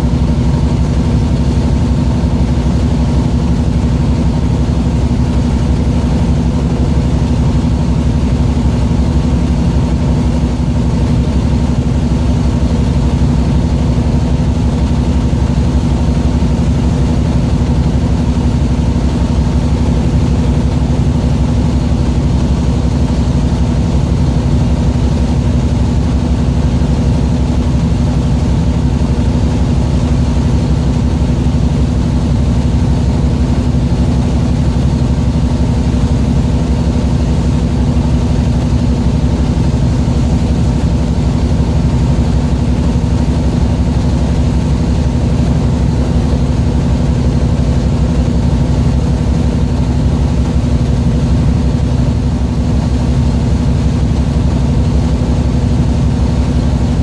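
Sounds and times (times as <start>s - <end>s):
boat engine running: 0.0s - 57.0s.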